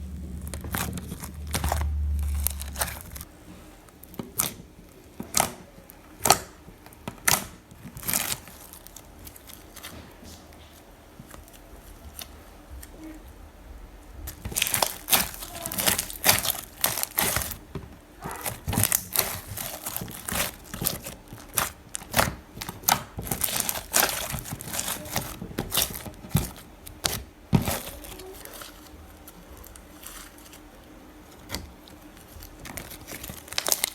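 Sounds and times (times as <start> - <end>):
low rumble: 0.0 - 3.4
slime clicking and crackling: 0.0 - 13.1, 14.0 - 33.9.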